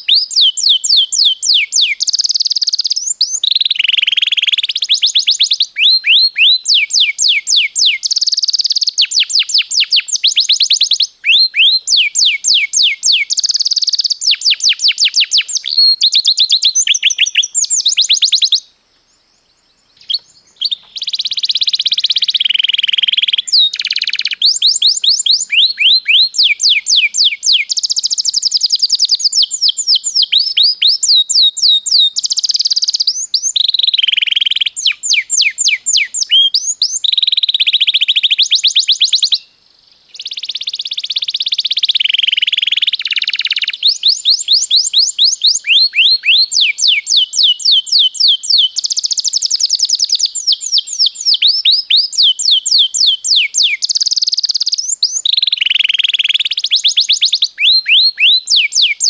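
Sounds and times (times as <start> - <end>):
canary singing trills and warbles: 19.9 - 39.4, 40.2 - 59.0.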